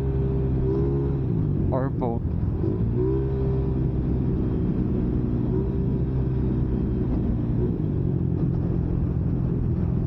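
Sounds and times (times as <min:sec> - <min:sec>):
wind noise on microphone: 0:03.7 - 0:10.0.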